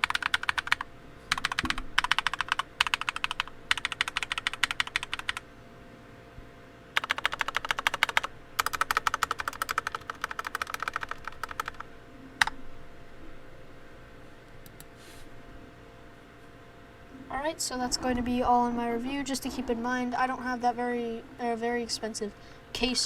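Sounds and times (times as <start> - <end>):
mechanical keyboard typing: 0.0 - 5.4, 7.0 - 12.6.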